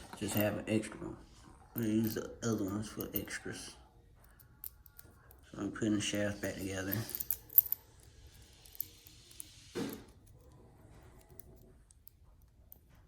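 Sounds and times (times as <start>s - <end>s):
small metal parts clicking: 4.2s - 5.5s, 6.9s - 13.0s.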